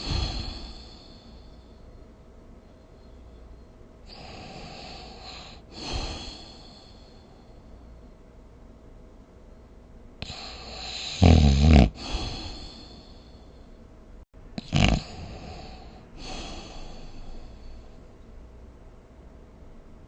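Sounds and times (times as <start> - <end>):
person snoring: 0.0 - 1.3, 4.1 - 7.1, 10.2 - 13.3, 14.6 - 17.8
soft breathing: 0.0 - 8.3, 11.9 - 14.0, 14.7 - 18.2.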